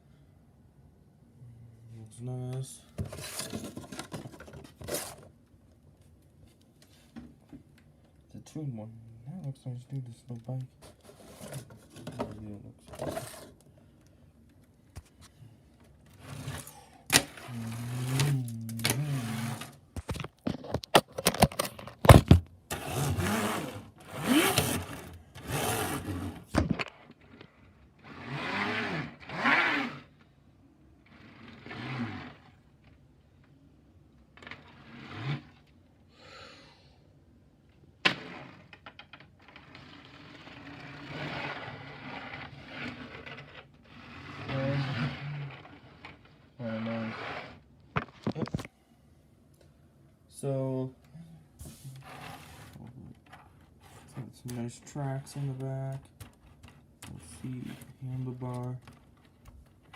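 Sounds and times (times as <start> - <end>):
person's voice: 17.4 - 19.6, 44.5 - 45.5, 54.1 - 56.1, 57.1 - 58.8
plastic parts clicking and knocking: 20.0 - 22.5.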